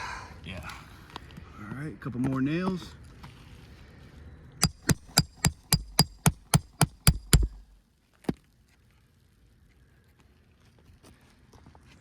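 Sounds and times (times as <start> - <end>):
hammer striking metal: 4.6 - 7.8.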